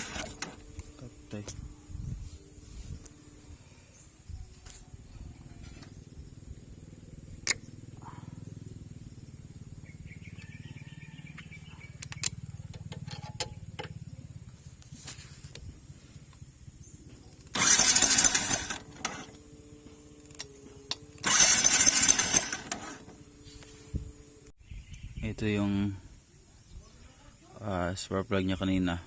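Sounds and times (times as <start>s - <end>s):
electric starter cranking engine: 0.0s - 1.1s, 17.4s - 23.4s
steady electric hum: 0.0s - 10.4s.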